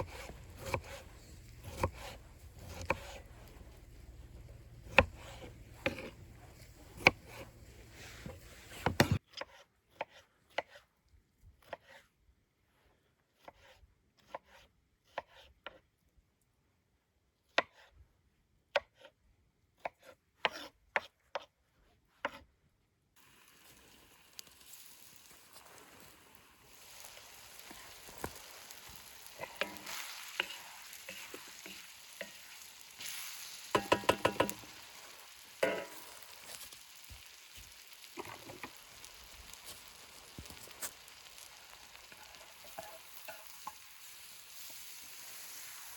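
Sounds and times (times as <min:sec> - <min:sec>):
knife chopping on cutting board: 0:01.6 - 0:03.2, 0:04.8 - 0:06.2.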